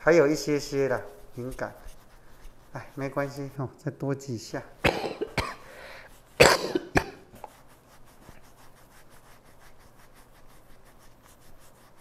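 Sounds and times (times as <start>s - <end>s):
person coughing: 4.8s - 5.7s, 6.4s - 7.4s
hands rubbing throat: 4.8s - 11.2s.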